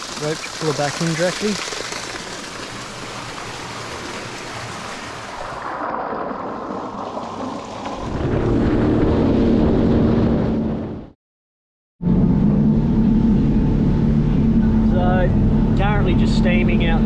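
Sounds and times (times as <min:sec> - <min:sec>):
water rushing: 0:00.0 - 0:08.5
jet ski engine running: 0:12.0 - 0:17.0.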